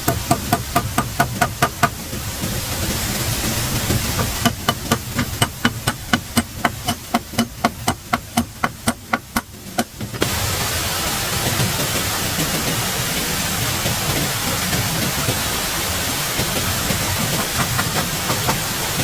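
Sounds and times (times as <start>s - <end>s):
hand tool striking wood: 0.0s - 2.0s, 3.9s - 10.3s, 17.2s - 18.7s
steady rushing background: 0.0s - 19.0s.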